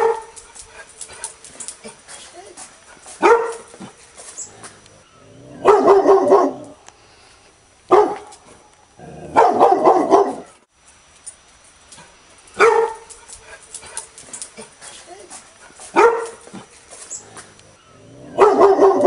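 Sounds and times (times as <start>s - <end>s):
dog barking angrily: 0.0s - 0.4s, 3.0s - 4.0s, 5.6s - 6.8s, 7.9s - 8.3s, 9.0s - 10.6s, 12.6s - 13.1s, 15.6s - 16.7s, 18.2s - 19.0s.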